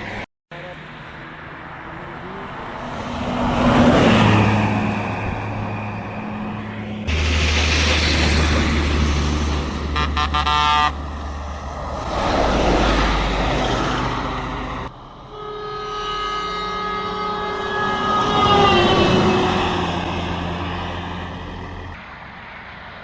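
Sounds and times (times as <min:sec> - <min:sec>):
bus engine and road noise: 0:00.0 - 0:23.0
multi-tone bus horn: 0:09.8 - 0:11.1, 0:15.3 - 0:19.8
long steady multi-tone horn: 0:09.9 - 0:11.1, 0:15.3 - 0:19.6.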